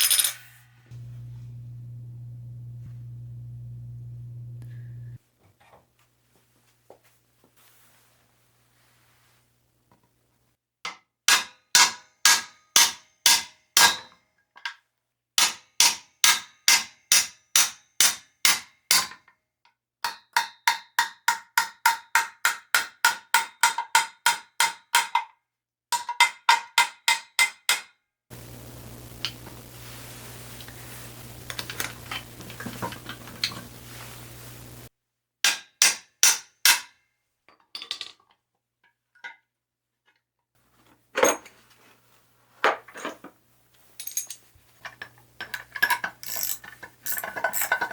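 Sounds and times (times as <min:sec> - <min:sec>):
steady hum: 0:00.7 - 0:05.2, 0:28.3 - 0:34.9.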